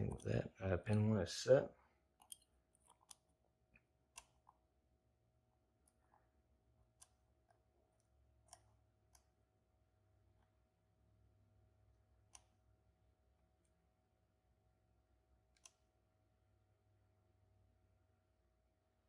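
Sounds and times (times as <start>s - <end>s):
lock pick clicking: 2.2s - 3.2s.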